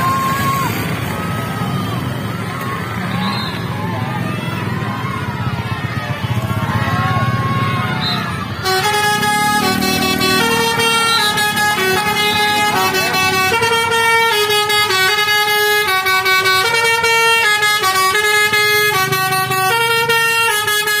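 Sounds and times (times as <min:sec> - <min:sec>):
musical bus horn playing a tune: 0:08.6 - 0:21.0.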